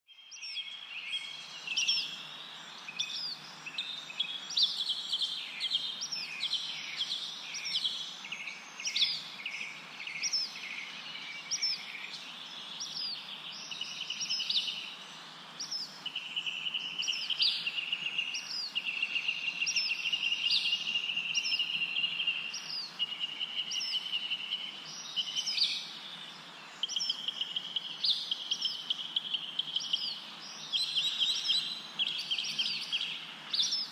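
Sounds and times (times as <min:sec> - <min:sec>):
songbirds chirping and trilling: 0:00.1 - 0:33.9.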